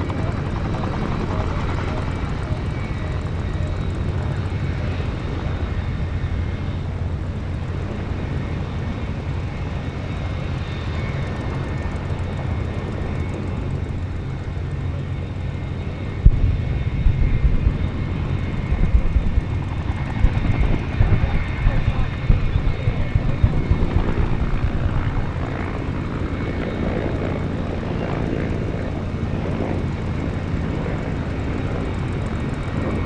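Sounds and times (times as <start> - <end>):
turbine engine rumble and whine: 0.0 - 33.0.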